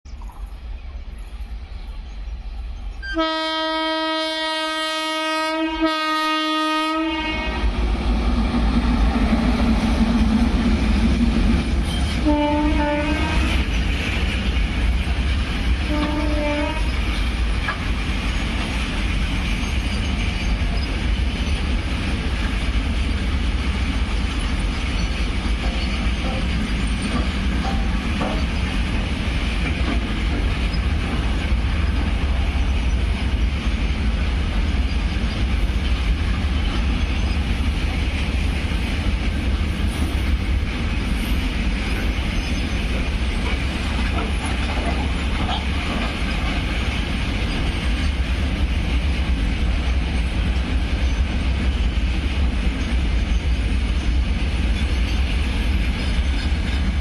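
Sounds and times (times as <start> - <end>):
train rumble: 0.1 - 57.0
locomotive horn blasts: 3.0 - 7.7, 12.2 - 13.6, 15.9 - 17.0
wheels clattering over rail joints: 42.4 - 48.2.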